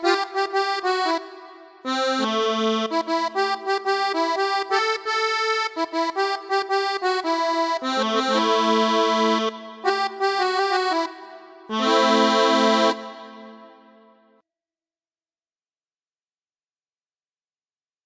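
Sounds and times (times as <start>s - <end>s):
accordion keyboard melody: 0.0s - 14.4s.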